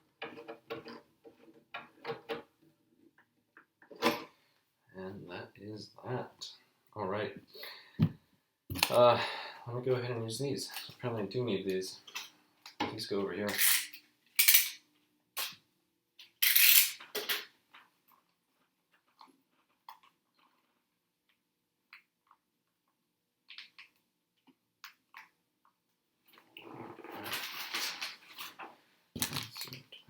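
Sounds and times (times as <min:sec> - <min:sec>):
noisy handling of parts: 0:12.1 - 0:14.8, 0:16.2 - 0:17.9
small parts clattering: 0:13.5 - 0:14.8, 0:16.2 - 0:17.8.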